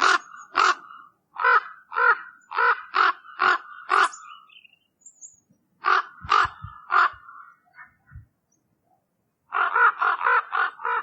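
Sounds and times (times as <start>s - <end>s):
raven calling: 0.0s - 4.8s, 5.8s - 8.1s, 9.5s - 11.0s.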